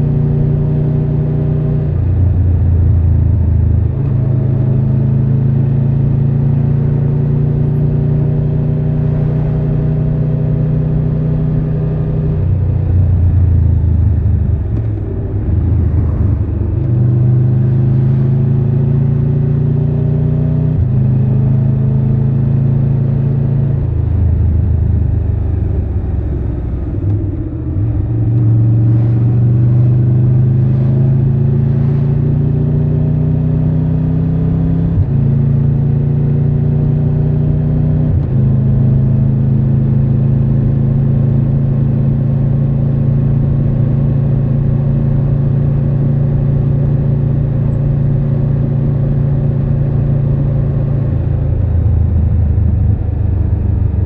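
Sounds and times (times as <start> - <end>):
motorcycle engine accelerating: 0.0 - 54.0.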